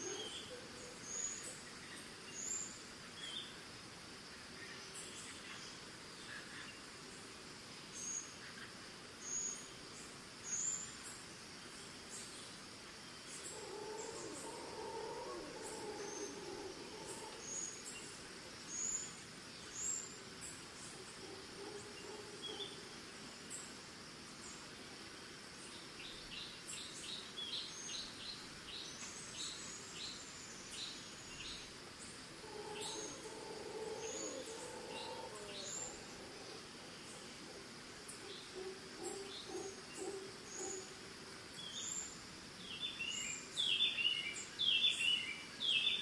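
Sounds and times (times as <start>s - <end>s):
crickets trilling: 0.0s - 46.0s
distant monkeys calling: 13.5s - 17.8s, 20.9s - 23.0s, 32.3s - 41.0s
birds chirping: 32.4s - 40.8s.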